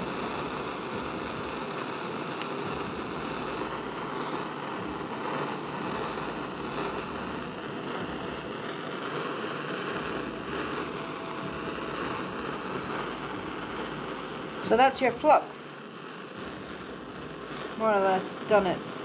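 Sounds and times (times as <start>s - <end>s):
gas torch flame burning: 0.0s - 19.0s.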